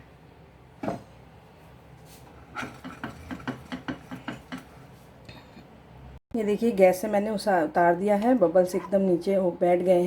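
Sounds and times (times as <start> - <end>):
utensil knocking against pan: 2.6 - 4.7.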